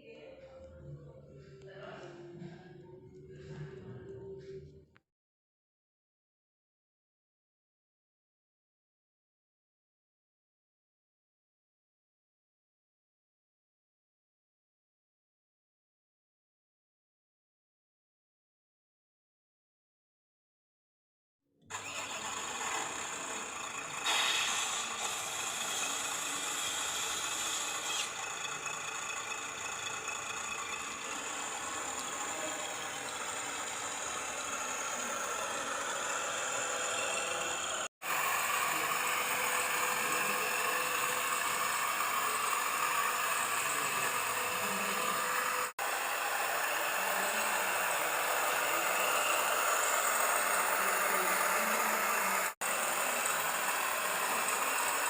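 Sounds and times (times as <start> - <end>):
small electric motors whining: 21.7 - 55.0.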